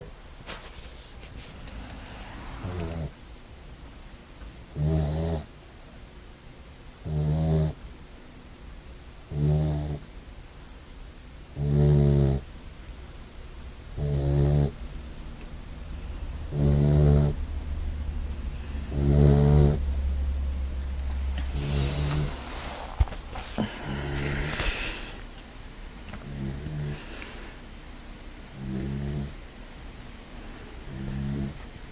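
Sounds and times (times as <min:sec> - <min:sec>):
puppy snoring: 0:01.4 - 0:03.2, 0:04.7 - 0:05.6, 0:07.0 - 0:07.8, 0:09.2 - 0:10.1, 0:11.4 - 0:12.5, 0:13.8 - 0:14.9, 0:16.4 - 0:20.0, 0:21.0 - 0:25.3, 0:26.1 - 0:27.6, 0:28.5 - 0:29.4, 0:30.6 - 0:31.7.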